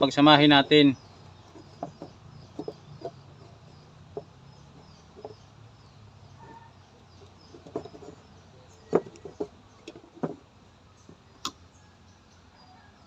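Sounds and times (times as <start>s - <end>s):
faint birds chirping: 0.0s - 13.0s
wires being twisted by hand: 6.4s - 10.5s.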